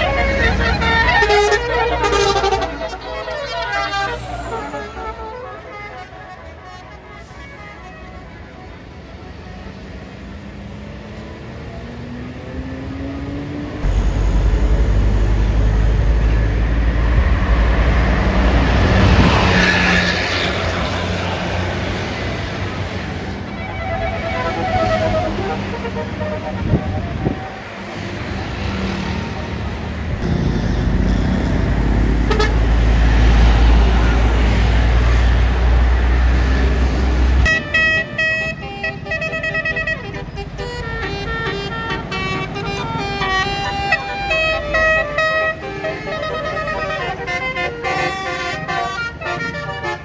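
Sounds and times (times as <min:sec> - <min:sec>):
multi-tone air horn melody: 0:00.0 - 0:10.3, 0:22.7 - 0:29.0, 0:32.1 - 0:35.2, 0:37.4 - 0:50.0
bus diesel engine passing: 0:00.0 - 0:50.0.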